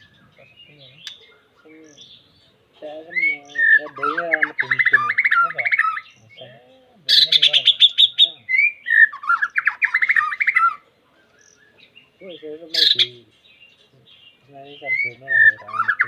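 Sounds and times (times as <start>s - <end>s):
bird rattling trills and whistles: 3.2s - 6.2s, 7.1s - 10.8s, 12.7s - 13.5s.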